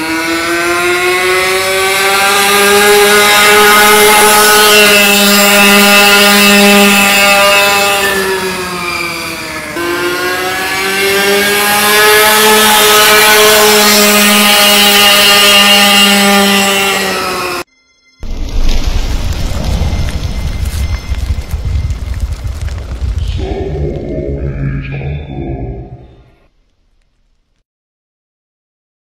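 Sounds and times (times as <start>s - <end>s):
dirt bike engine revving: 0.0s - 17.6s.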